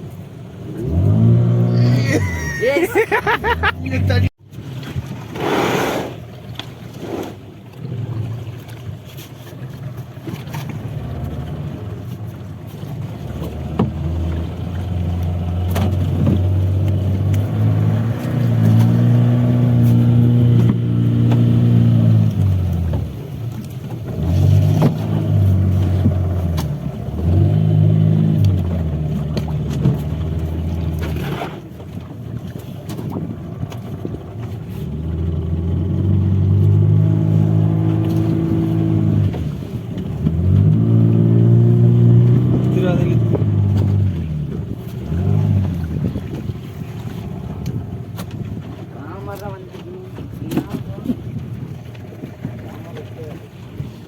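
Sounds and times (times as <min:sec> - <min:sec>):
engine revving: 0:00.8 - 0:02.2, 0:35.1 - 0:39.5, 0:40.3 - 0:44.2.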